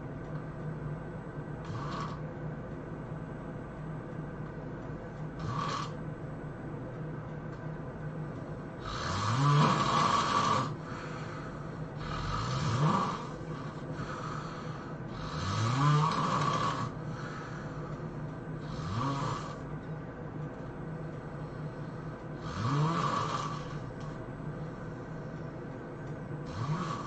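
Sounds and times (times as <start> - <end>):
low hum: 0.0 - 27.0
person snoring: 1.6 - 2.2, 5.4 - 6.0, 8.8 - 17.9, 18.6 - 19.7, 21.4 - 24.0, 26.4 - 27.0.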